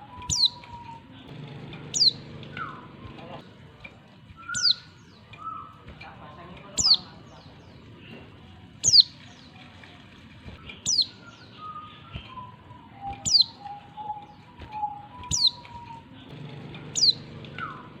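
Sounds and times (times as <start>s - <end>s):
bird calling sharp high notes: 0.0s - 3.4s, 10.7s - 18.0s
soft low whistled bird notes: 0.0s - 3.4s, 4.3s - 6.1s, 10.6s - 18.0s.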